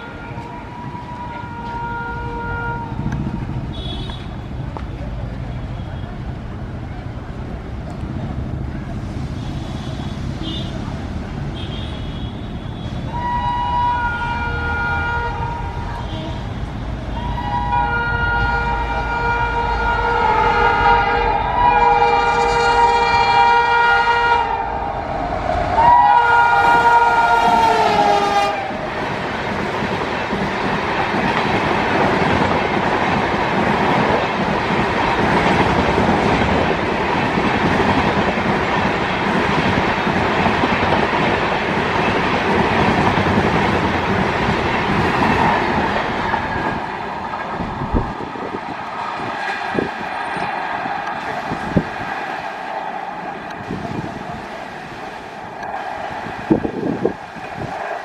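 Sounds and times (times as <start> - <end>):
locomotive horn blasts: 0.0 - 3.1, 3.7 - 4.5, 11.6 - 24.8, 25.8 - 28.8
train wheels rushing on rails: 0.0 - 58.0
sharp clicks from train wheels: 2.9 - 5.5, 7.4 - 8.4, 27.4 - 54.2, 54.8 - 58.0.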